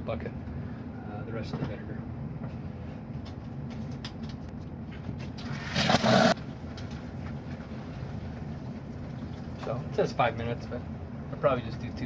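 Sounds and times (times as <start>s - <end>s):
water rushing into bucket: 5.3s - 6.4s
loud hissing water spurt: 5.4s - 6.4s.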